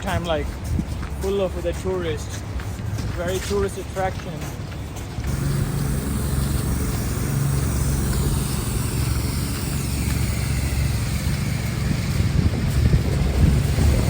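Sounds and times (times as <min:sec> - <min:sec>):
vehicle engine running: 0:05.2 - 0:14.0.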